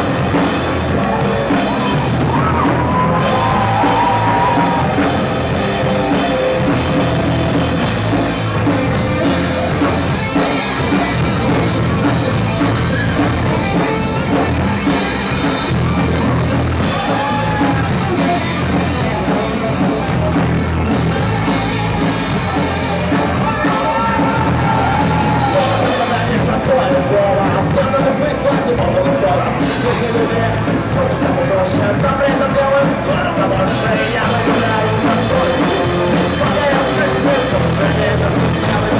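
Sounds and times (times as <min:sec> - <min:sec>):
person singing: 0:00.0 - 0:07.2, 0:16.8 - 0:38.9
rock band playing live: 0:00.0 - 0:38.9.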